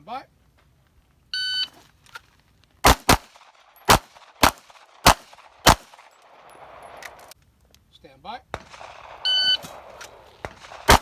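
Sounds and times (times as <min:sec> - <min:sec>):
pistol shots: 0:02.8 - 0:07.0, 0:08.5 - 0:11.0.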